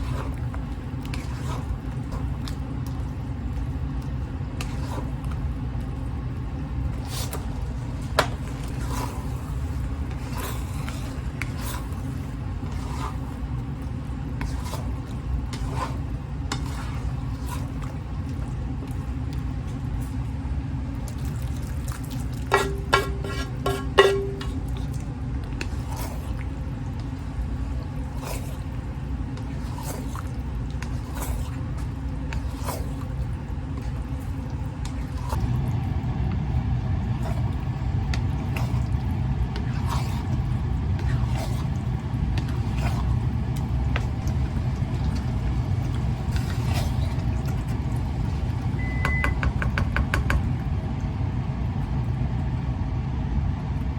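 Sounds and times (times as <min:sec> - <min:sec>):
curry simmering with soft pops: 0:00.0 - 0:53.9
steady low hum: 0:00.0 - 0:53.9
short beeps: 0:48.8 - 0:49.4.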